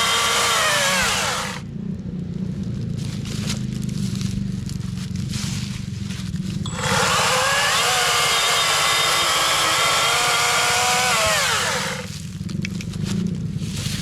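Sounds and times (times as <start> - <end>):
battery chainsaw whining: 0.0 - 1.6, 6.7 - 12.3.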